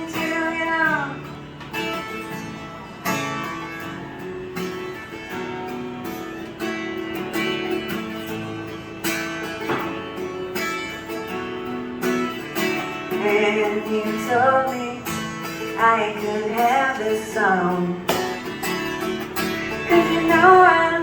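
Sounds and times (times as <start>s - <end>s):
person singing: 0.0s - 1.3s, 13.0s - 18.5s, 19.7s - 21.0s
acoustic guitar strumming: 0.0s - 21.0s.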